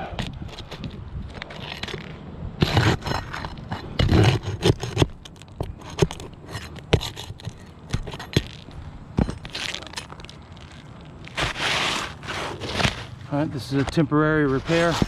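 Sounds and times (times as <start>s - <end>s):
roof shingles scraping and crackling: 0.5s - 15.0s.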